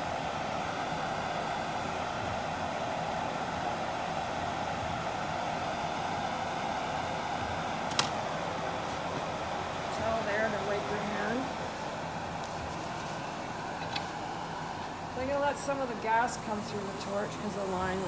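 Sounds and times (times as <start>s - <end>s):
sharp click: 7.9s - 8.2s
steady rushing noise: 8.8s - 13.7s.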